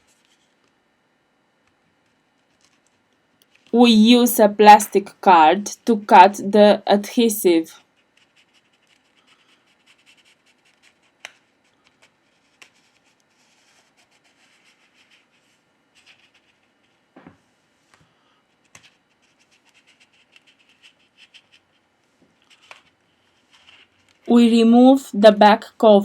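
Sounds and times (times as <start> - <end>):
plastic card scratching: 8.1 - 17.0, 18.7 - 21.8, 22.4 - 24.3.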